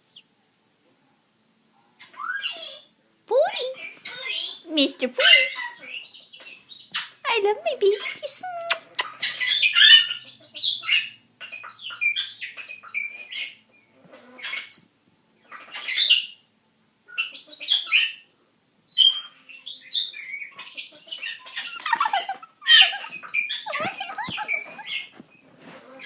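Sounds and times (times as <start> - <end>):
parrot chirping and squawking: 2.0 - 2.9, 3.5 - 13.6, 14.2 - 16.4, 17.1 - 18.2, 18.9 - 26.0.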